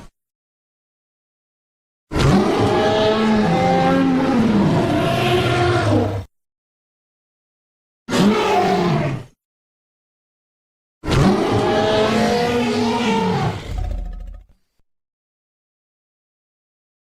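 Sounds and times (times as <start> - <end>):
dinosaur roar: 2.1 - 6.3, 8.1 - 9.4, 11.0 - 14.6.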